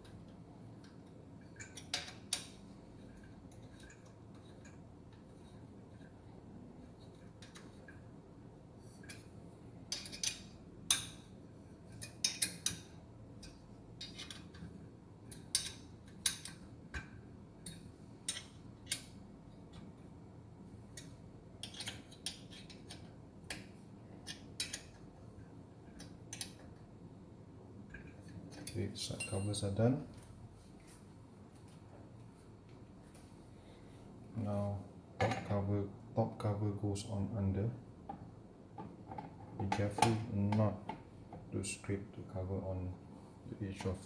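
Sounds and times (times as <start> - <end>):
metallic clicks of hand tools: 15.3 - 19.1.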